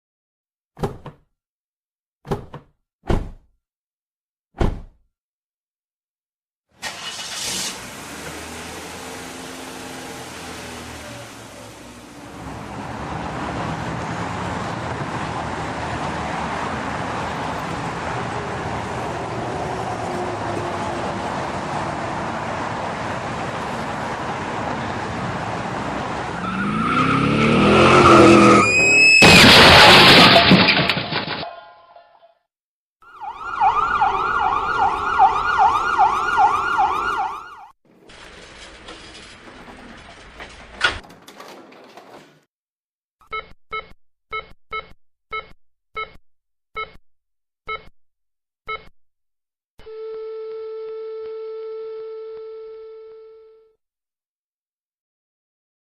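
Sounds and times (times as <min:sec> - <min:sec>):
tyres screeching: 0:26.3 - 0:30.5
siren wailing: 0:26.4 - 0:29.3, 0:33.0 - 0:37.7
loud car crash: 0:26.6 - 0:31.8
short electronic beeps: 0:43.3 - 0:46.2, 0:46.8 - 0:47.0, 0:47.7 - 0:47.9, 0:48.7 - 0:49.0.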